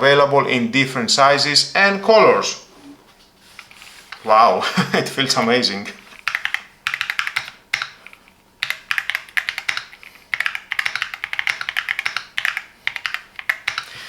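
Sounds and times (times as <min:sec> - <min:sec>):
mechanical keyboard key clacks: 0:06.2 - 0:13.9.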